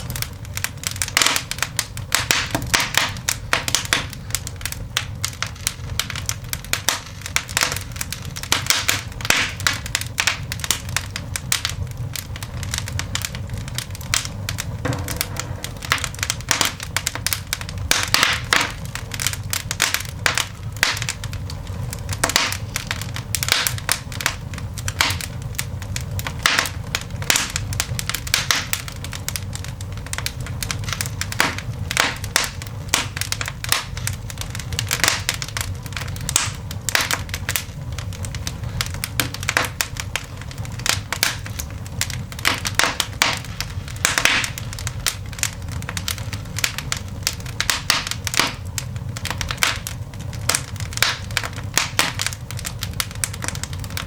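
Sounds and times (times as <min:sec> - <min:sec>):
coal fire crackling and popping: 0:00.0 - 0:54.0
low rumble: 0:10.4 - 0:24.9.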